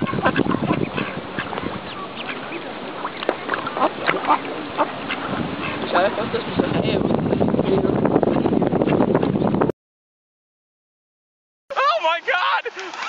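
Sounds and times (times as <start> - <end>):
birds calling: 0.0 - 6.6.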